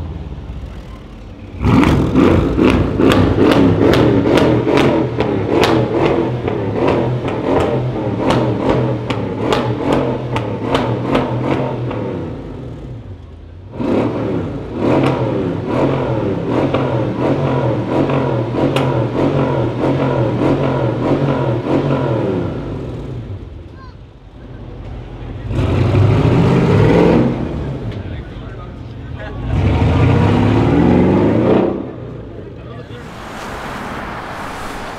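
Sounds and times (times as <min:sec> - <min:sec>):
exhaust crackling and popping: 0:32.9 - 0:34.9.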